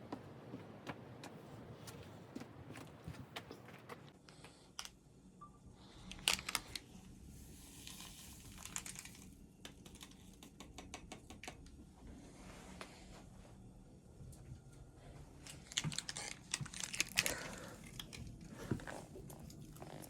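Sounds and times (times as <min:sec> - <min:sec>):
sharp clicks and crackles: 0:06.1 - 0:06.9.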